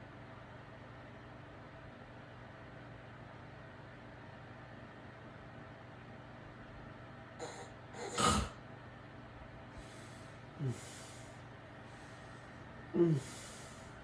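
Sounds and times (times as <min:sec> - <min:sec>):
steady low hum: 0:00.0 - 0:14.0
loud snort: 0:07.4 - 0:08.6
man snoring: 0:07.4 - 0:08.6, 0:10.6 - 0:11.2, 0:13.0 - 0:13.8
short grunt: 0:07.4 - 0:08.6, 0:10.6 - 0:11.0, 0:13.0 - 0:13.6
soft breaths: 0:09.6 - 0:14.0.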